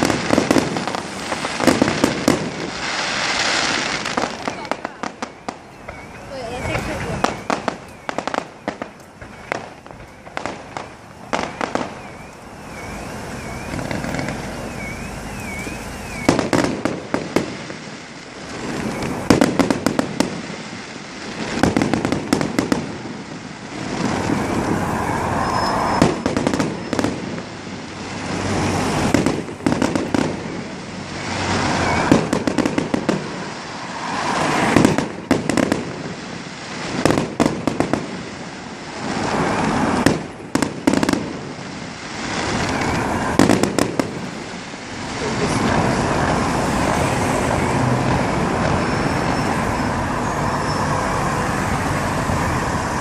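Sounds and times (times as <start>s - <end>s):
fireworks bangs and cracks: 0.0s - 53.0s
fireworks crackling: 0.0s - 53.0s
warbling firework whistle: 5.2s - 16.9s, 18.4s - 19.4s, 23.7s - 27.5s, 28.2s - 37.9s, 41.5s - 43.7s, 45.5s - 53.0s.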